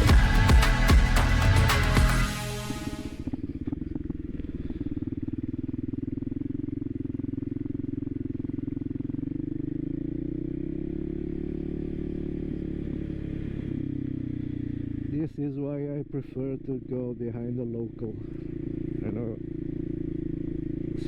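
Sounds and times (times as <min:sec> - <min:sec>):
background music: 0:00.0 - 0:03.3
motorcycle engine running: 0:00.0 - 0:15.4, 0:16.4 - 0:21.0.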